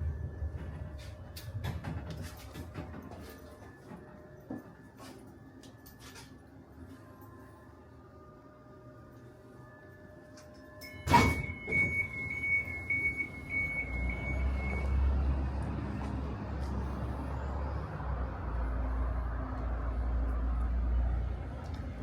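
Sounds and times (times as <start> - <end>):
tram motors and wheels rumble: 0.0 - 22.0
high door-signal beep: 10.4 - 15.1.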